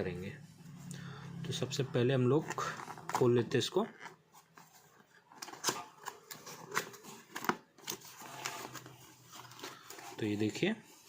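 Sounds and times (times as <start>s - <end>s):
packaging clicks and rustles: 2.6s - 10.6s.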